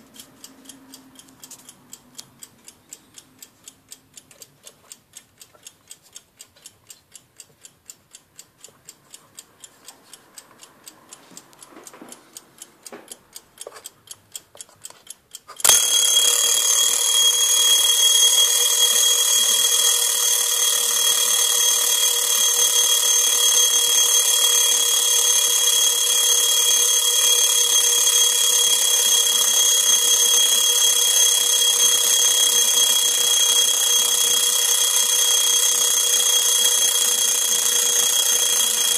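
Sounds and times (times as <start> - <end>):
clock ticking rapidly: 0.0 - 38.9
alarm bell ringing: 15.6 - 38.9.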